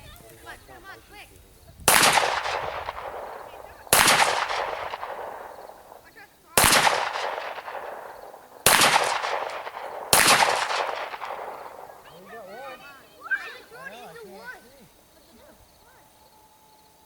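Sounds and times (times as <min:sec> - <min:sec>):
gunshots with echo: 0:01.9 - 0:12.4.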